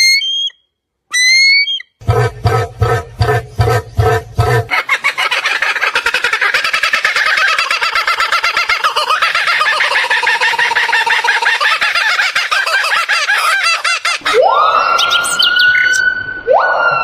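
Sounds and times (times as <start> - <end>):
flock of birds chirping: 2.9 - 16.0.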